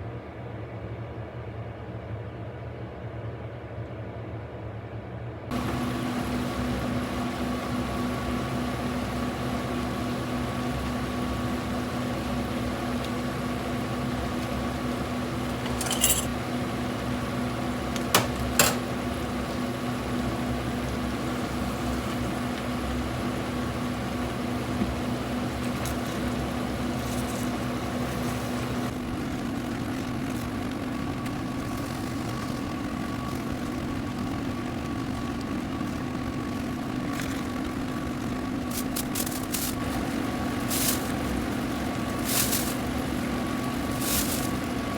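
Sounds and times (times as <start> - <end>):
kitchen appliance humming: 5.5 - 44.9
kitchenware clinking: 15.5 - 16.3, 18.2 - 18.9.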